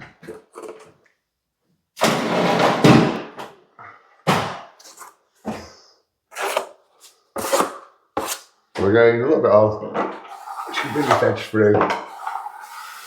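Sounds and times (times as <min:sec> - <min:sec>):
trowel scraping filler: 0:06.3 - 0:08.5, 0:10.2 - 0:13.0.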